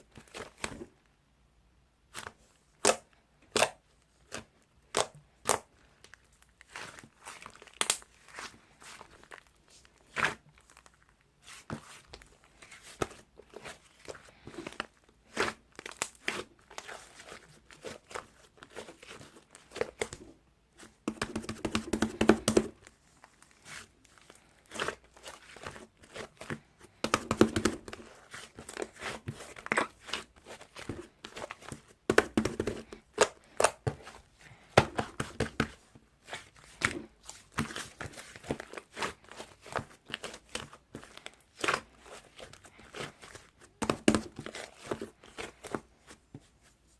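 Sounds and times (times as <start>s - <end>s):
slime clicking and crackling: 7.5s - 8.2s.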